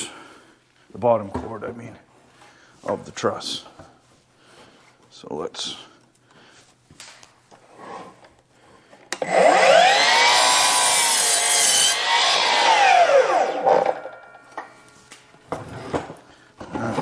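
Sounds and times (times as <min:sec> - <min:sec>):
electric saw cutting wood: 0:09.2 - 0:14.3.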